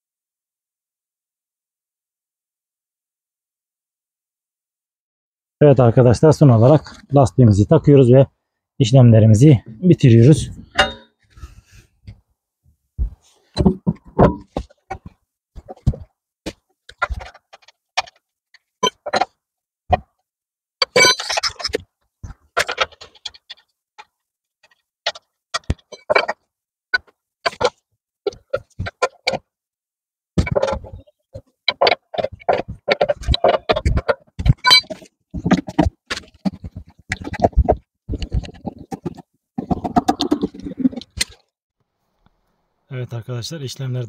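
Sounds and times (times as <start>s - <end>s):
hand tools clattering: 10.8s - 11.1s.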